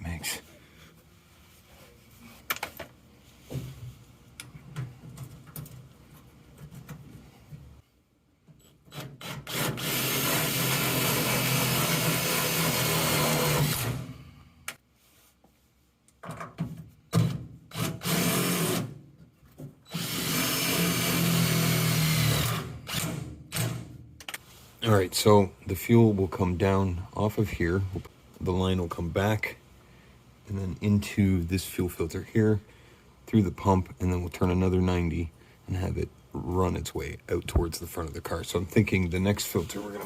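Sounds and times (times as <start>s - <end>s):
power drill running: 9.5s - 14.1s, 19.9s - 23.2s.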